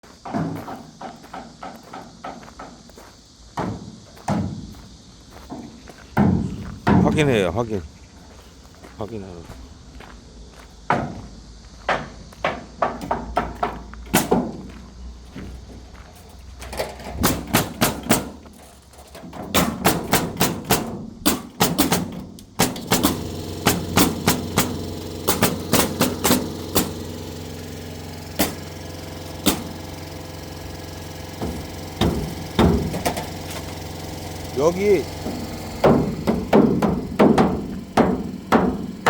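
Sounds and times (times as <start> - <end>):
hammer driving nails: 11.9 - 14.6, 17.1 - 18.4, 19.2 - 39.0
steady machine hum: 13.4 - 39.0.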